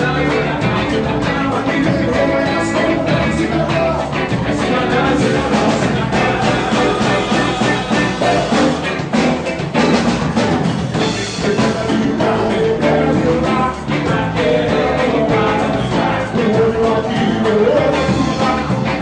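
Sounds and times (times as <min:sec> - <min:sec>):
person singing: 0:00.0 - 0:09.6, 0:10.9 - 0:19.0
band music: 0:00.0 - 0:19.0
drum kit: 0:00.0 - 0:19.0.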